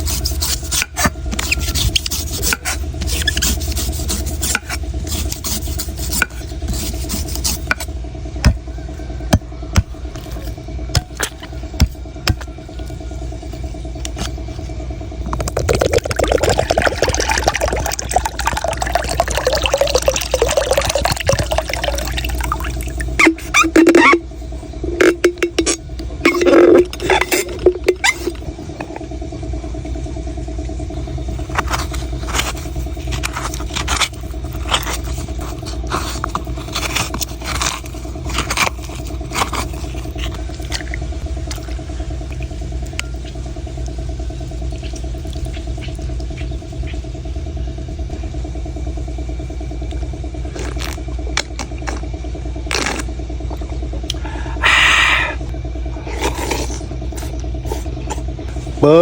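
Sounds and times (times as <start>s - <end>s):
steady mechanical hum: 0.0s - 59.0s
knife striking coconuts: 10.9s - 12.5s.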